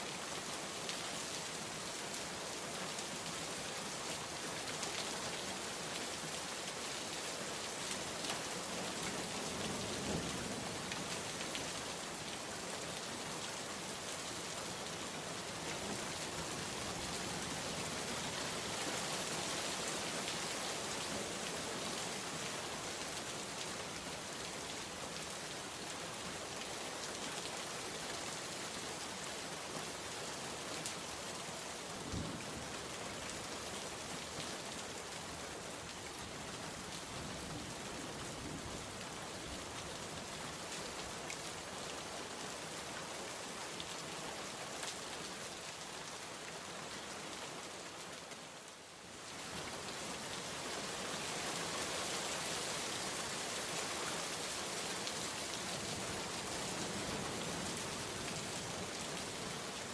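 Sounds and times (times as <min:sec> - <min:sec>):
steady rain falling: 0:00.0 - 0:59.9.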